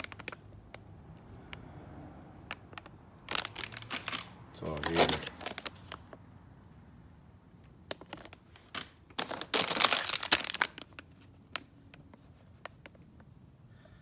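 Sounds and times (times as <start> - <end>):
packaging crinkling and rustling: 0.0 - 0.4, 2.7 - 6.1, 7.9 - 12.8.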